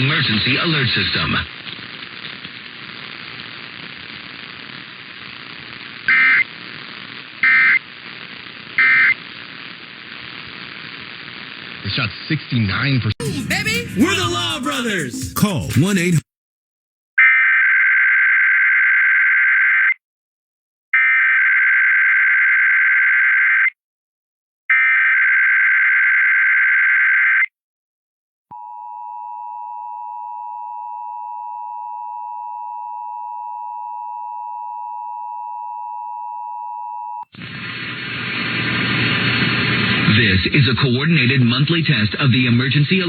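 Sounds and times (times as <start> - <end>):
noisy broadcast audio: 0.0 - 16.2, 37.4 - 43.0.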